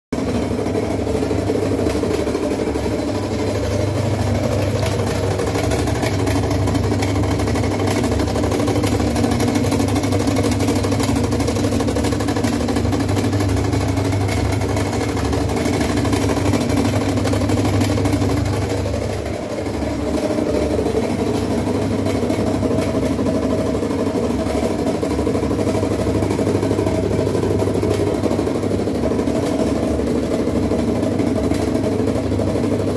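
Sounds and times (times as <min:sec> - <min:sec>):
washing machine droning: 0:00.1 - 0:32.9.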